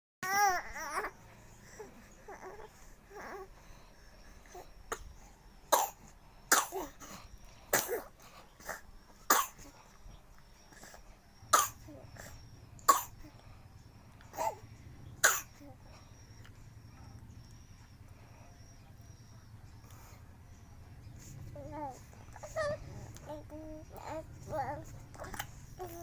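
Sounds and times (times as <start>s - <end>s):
small child coughing: 4.5s - 9.8s, 10.8s - 13.3s, 14.4s - 15.8s, 21.8s - 26.0s.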